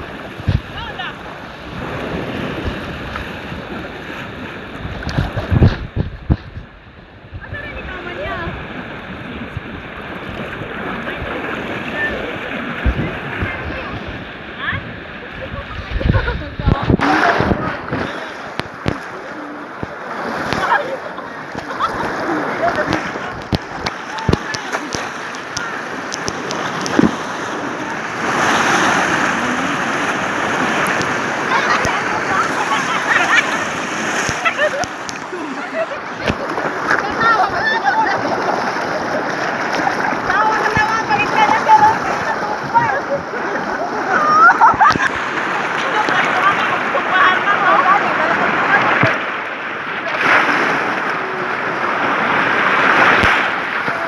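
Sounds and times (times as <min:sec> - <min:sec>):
wind buffeting microphone: 0:00.0 - 0:19.0
water rushing and splashing: 0:00.0 - 0:54.0
faint clicks: 0:21.5 - 0:27.5, 0:30.7 - 0:32.6.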